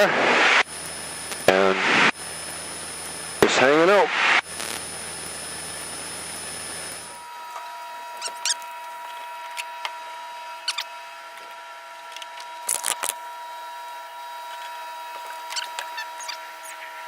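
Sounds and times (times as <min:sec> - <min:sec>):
airplane cabin noise: 0:00.0 - 0:07.2.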